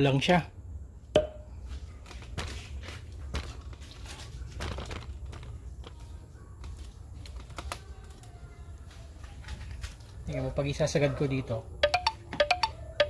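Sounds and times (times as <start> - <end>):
low steady hum: 0.0 - 10.3
crinkling rustles: 1.6 - 10.5.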